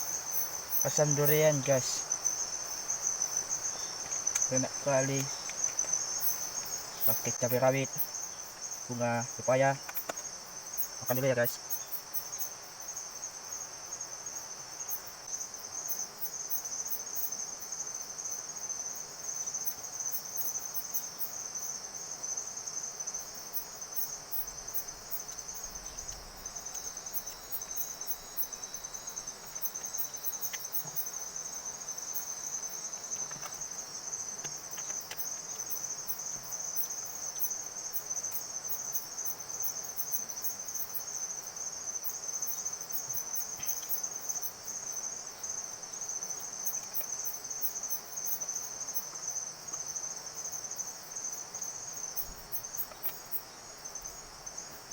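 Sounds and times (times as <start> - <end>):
insects trilling: 0.0 - 54.9
soft background hiss: 0.0 - 54.9.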